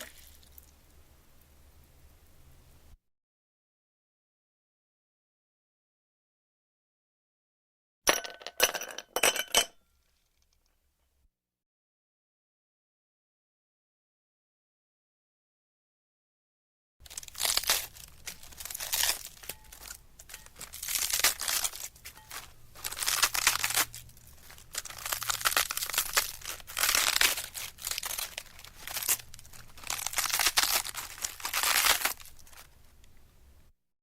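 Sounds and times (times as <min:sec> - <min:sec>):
crinkling and crumpling: 0:17.0 - 0:33.2.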